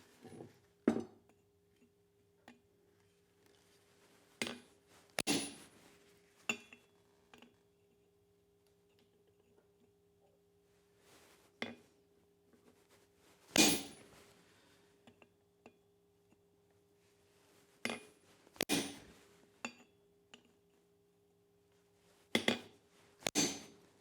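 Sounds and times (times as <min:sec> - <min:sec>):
metal clanks on anvil: 0:13.6 - 0:14.0, 0:23.2 - 0:23.7.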